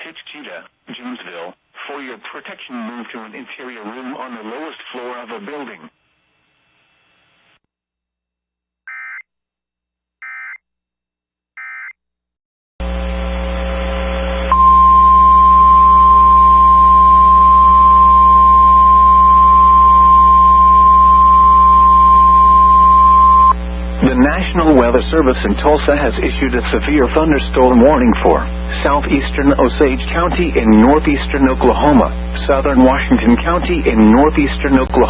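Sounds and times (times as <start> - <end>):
low hum: 12.8 - 32.8
warning alarm tone: 14.5 - 23.6
buzzy data burst chirps: 14.5 - 25.3.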